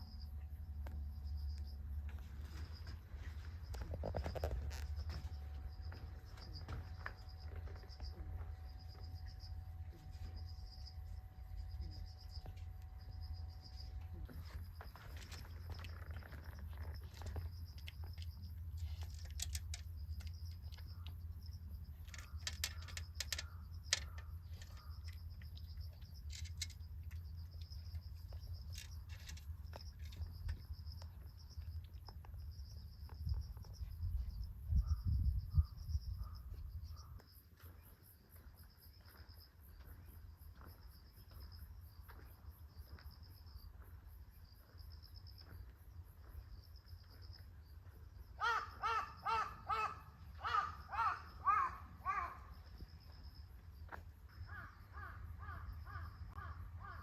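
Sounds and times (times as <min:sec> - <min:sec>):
insect pulsing trill: 0:00.0 - 0:39.3
scattered clicks: 0:17.8 - 0:21.2, 0:22.0 - 0:30.6
wind rumble on microphone: 0:32.7 - 0:37.2.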